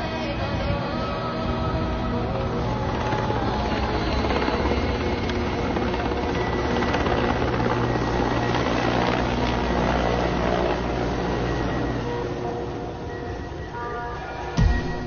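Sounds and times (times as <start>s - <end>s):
helicopter rotor beating: 0.0s - 13.8s.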